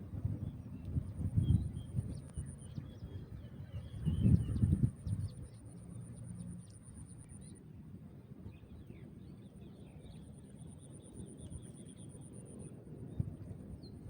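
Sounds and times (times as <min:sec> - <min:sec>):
wind rumbling on microphone: 0:00.0 - 0:05.7, 0:13.0 - 0:14.0.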